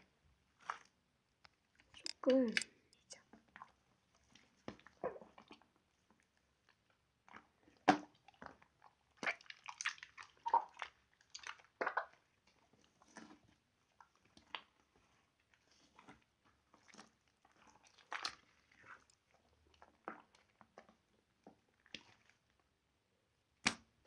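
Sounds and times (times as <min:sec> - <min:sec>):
slime squished by hand: 0:07.3 - 0:20.9.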